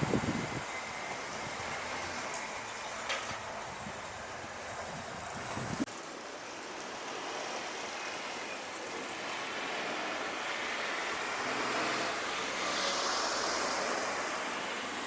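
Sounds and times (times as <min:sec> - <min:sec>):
vehicle crossing railway tracks: 0:00.0 - 0:15.0.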